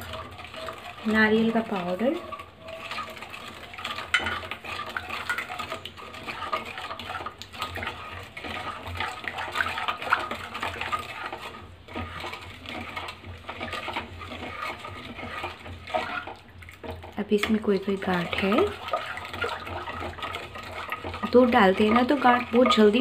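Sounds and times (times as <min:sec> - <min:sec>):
spoon scraping a pan: 0:00.0 - 0:23.0.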